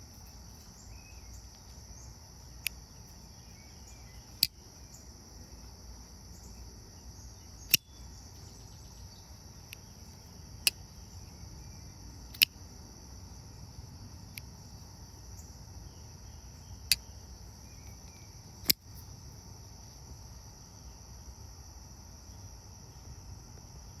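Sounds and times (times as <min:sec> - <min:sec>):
insect chirring: 0:00.0 - 0:21.3
folding knife clicking: 0:12.3 - 0:12.5.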